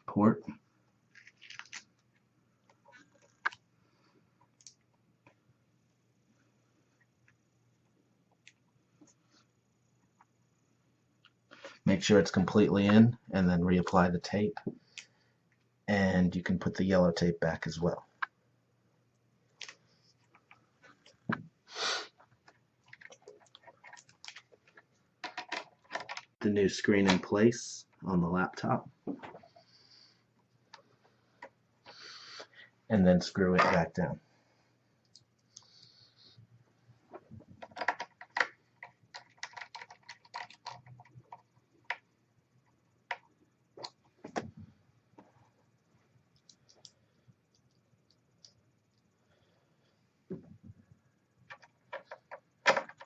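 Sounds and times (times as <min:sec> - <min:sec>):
plastic parts knocking: 0:51.5 - 0:53.0.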